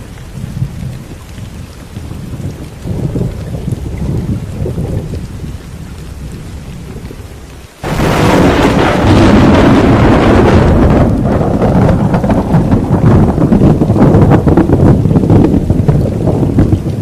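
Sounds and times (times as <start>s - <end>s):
heavy rain: 0.0s - 17.0s
thunder rumbling and cracking: 0.0s - 17.0s.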